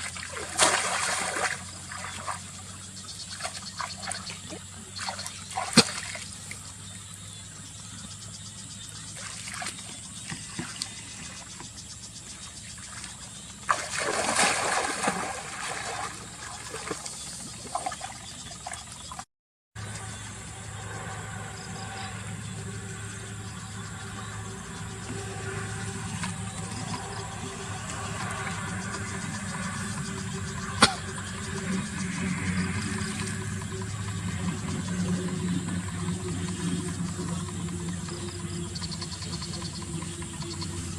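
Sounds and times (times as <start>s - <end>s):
water trickling and splashing: 0.0s - 6.8s, 9.1s - 11.8s, 12.7s - 19.2s
steady hum: 19.8s - 40.9s.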